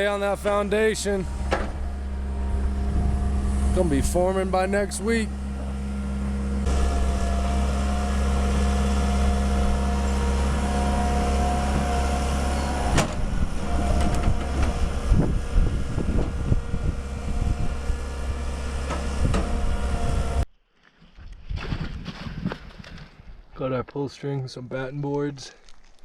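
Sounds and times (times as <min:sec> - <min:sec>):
diesel engine running: 0:00.0 - 0:20.5.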